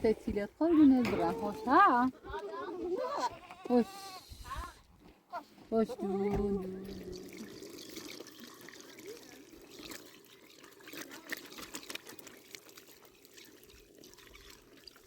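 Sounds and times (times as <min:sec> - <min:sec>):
liquid trickling into a container: 0:06.2 - 0:15.0.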